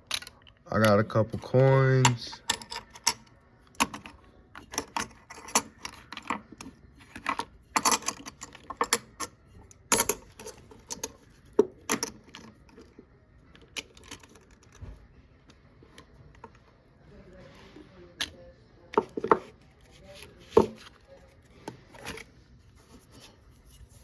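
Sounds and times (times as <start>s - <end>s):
coins clinking together: 9.9s - 11.1s.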